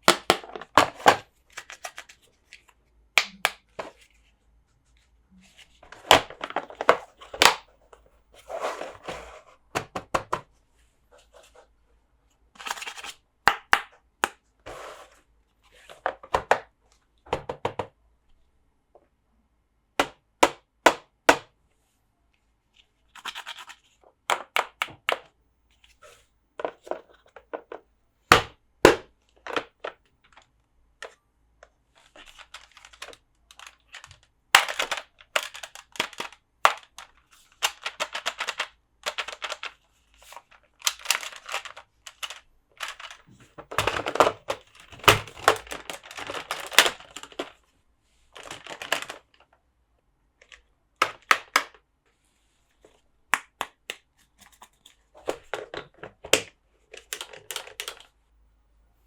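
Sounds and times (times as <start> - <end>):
scratchy rustles: 8.4 - 9.6
plastic toys clicking and knocking: 12.6 - 14.4, 23.2 - 25.4, 26.6 - 31.2, 32.0 - 47.6, 48.4 - 49.6, 50.4 - 51.8, 53.4 - 58.1.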